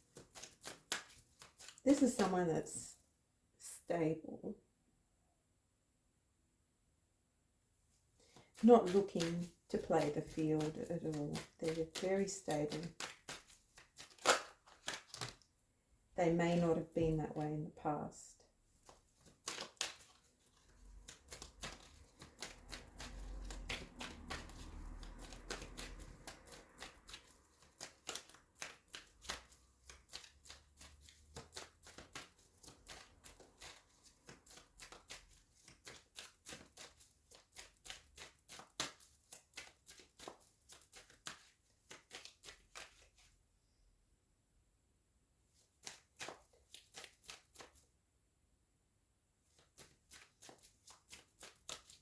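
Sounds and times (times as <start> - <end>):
cards being shuffled: 0.1 - 2.8, 8.2 - 15.5, 18.8 - 43.3, 45.8 - 47.8, 49.5 - 52.0.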